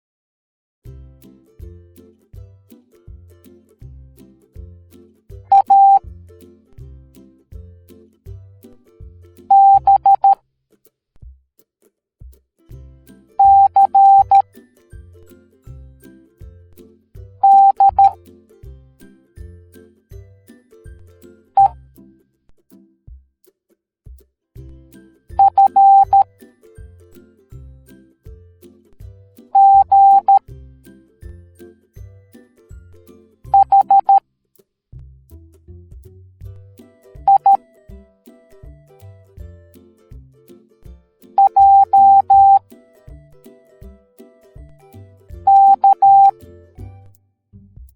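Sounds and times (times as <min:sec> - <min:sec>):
soft background music: 0:02.6 - 0:10.4, 0:12.9 - 0:22.2, 0:24.6 - 0:34.2, 0:36.6 - 0:47.2
morse code beeps: 0:05.5 - 0:06.0, 0:09.5 - 0:10.4, 0:13.4 - 0:14.4, 0:17.4 - 0:18.2, 0:21.6 - 0:21.8, 0:25.4 - 0:26.3, 0:29.6 - 0:30.4, 0:33.5 - 0:34.2, 0:37.2 - 0:37.6, 0:41.4 - 0:42.6, 0:45.4 - 0:46.3.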